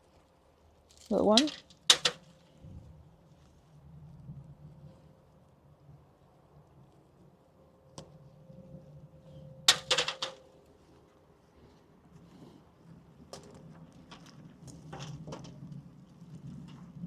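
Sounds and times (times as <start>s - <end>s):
potatoes knocking: 1.1s - 2.3s, 9.7s - 10.4s.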